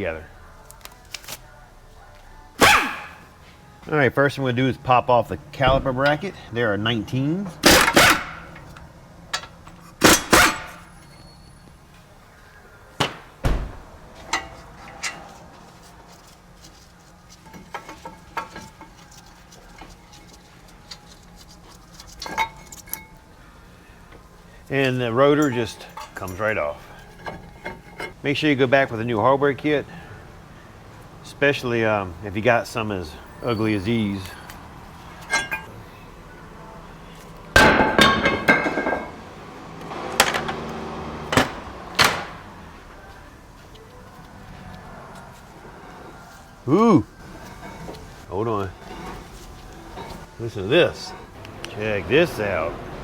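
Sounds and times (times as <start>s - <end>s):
metal clanks and knocks: 7.5s - 11.2s, 13.0s - 15.4s, 17.4s - 19.0s, 27.0s - 28.2s, 35.2s - 35.7s, 37.6s - 39.3s, 40.1s - 42.6s
metal tools clinking: 7.5s - 11.7s, 14.2s - 16.4s, 17.3s - 23.3s, 24.8s - 28.2s, 33.1s - 36.0s, 37.2s - 39.2s, 47.2s - 51.4s.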